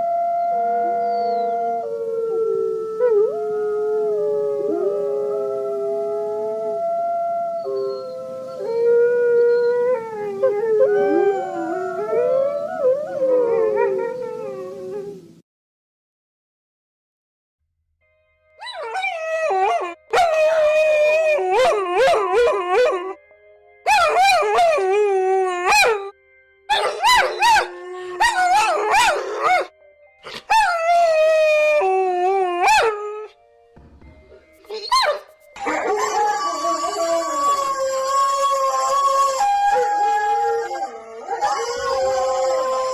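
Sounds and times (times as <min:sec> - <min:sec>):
dogs howling: 0:00.0 - 0:15.3, 0:26.8 - 0:29.7, 0:34.7 - 0:42.9.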